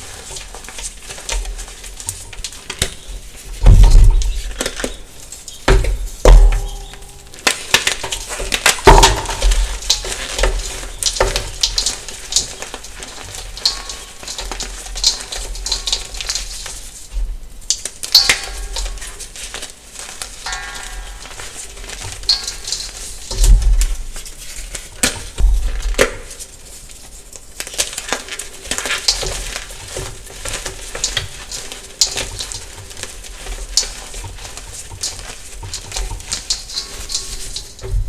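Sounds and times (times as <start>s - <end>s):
chalk crunching and crackling: 0.0s - 38.0s
heavy thumps: 5.7s - 7.3s.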